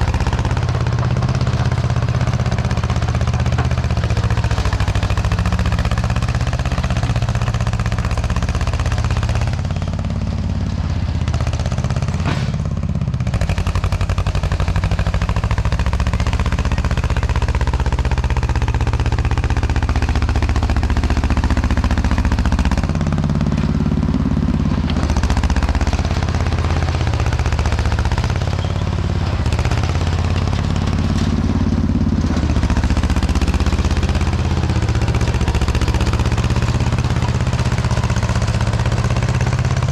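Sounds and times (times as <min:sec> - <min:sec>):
diesel engine under load: 0:00.0 - 0:39.9.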